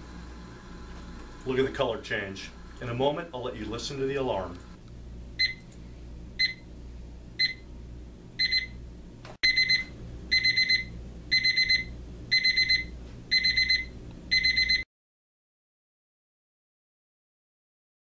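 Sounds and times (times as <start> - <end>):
alarm clock beeping: 8.4 - 8.7, 9.4 - 14.8.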